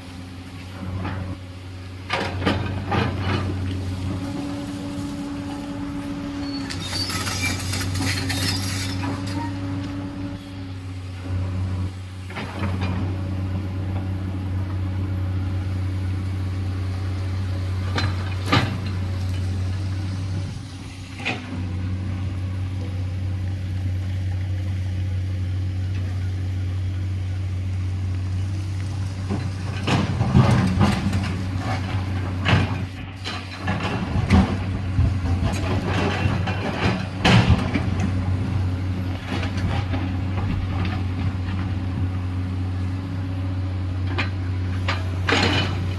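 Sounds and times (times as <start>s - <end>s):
diesel engine running: 0.0s - 45.9s
machine clanks and knocks: 2.0s - 3.8s, 29.2s - 38.2s, 44.0s - 45.9s.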